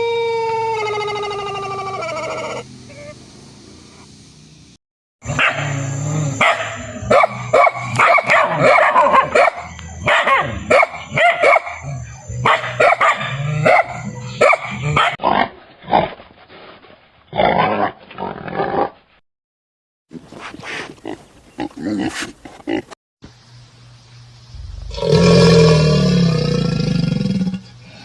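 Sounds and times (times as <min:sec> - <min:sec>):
dog barking: 0:05.3 - 0:15.2.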